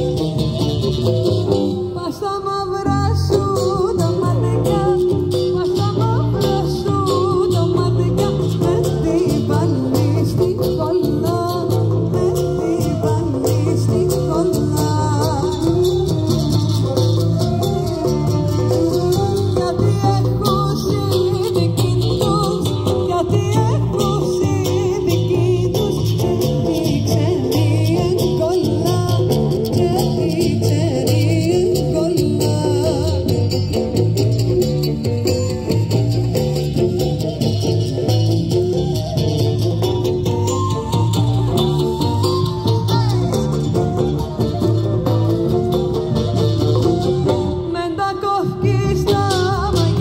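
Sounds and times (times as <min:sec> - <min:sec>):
wavering melody line: 0:00.0 - 0:48.0
guitar: 0:00.0 - 0:50.0
live band playing: 0:00.0 - 0:50.0
plucked strings: 0:00.0 - 0:50.0
person singing: 0:01.7 - 0:34.0, 0:38.0 - 0:50.0.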